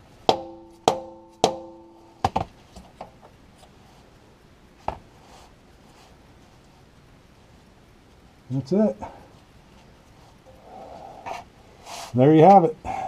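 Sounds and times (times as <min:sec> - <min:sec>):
hammer striking metal bushing: 0:00.3 - 0:02.4.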